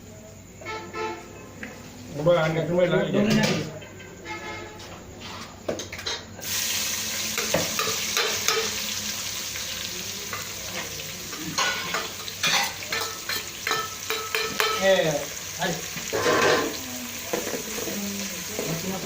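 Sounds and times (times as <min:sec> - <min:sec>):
food sizzling in hot oil: 0:06.4 - 0:19.0
spoon scraping a pan: 0:11.5 - 0:14.9, 0:15.9 - 0:18.8.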